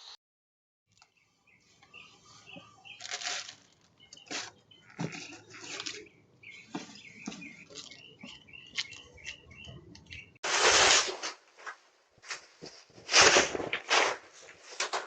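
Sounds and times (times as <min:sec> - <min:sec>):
small birds chirping: 0:00.9 - 0:10.4.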